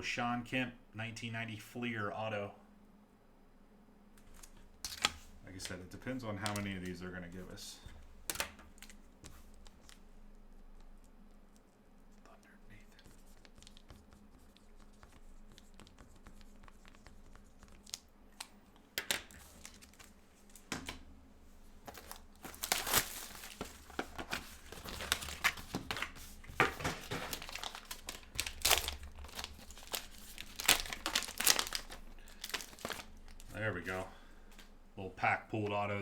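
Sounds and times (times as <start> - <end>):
wrapper crinkling and tearing: 17.7 - 20.6, 21.9 - 33.6.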